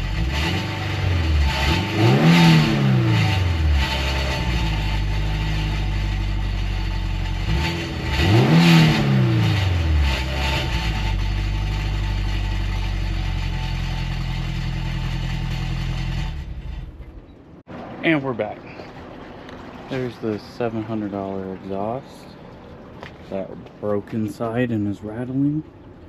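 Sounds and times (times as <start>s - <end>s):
engine revving: 0.0s - 17.3s
car engine idling: 0.0s - 26.0s.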